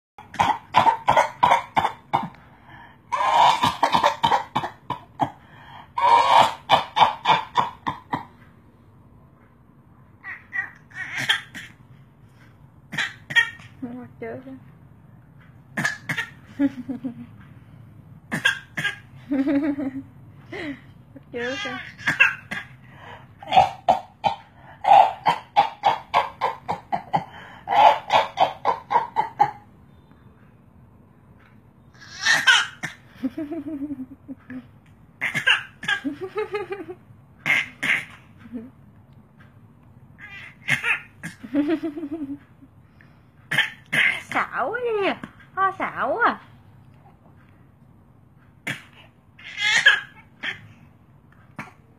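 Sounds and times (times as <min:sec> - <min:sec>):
baby making cough-like bursts: 0:00.3 - 0:02.3, 0:03.2 - 0:05.4, 0:10.9 - 0:11.8, 0:12.9 - 0:13.7, 0:15.8 - 0:16.4, 0:18.3 - 0:19.0, 0:21.8 - 0:22.8, 0:35.2 - 0:36.0, 0:37.4 - 0:38.2, 0:43.5 - 0:44.3, 0:48.6 - 0:50.6
breathy cough-like bursts: 0:03.1 - 0:08.3, 0:21.9 - 0:28.8, 0:48.6 - 0:49.2.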